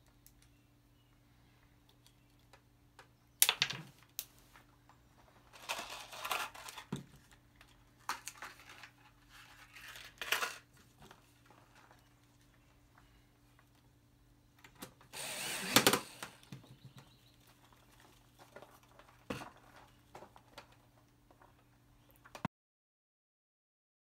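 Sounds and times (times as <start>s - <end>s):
faint steady hum: 0.0s - 22.4s
rustling handling noises: 4.0s - 13.9s, 16.7s - 22.4s.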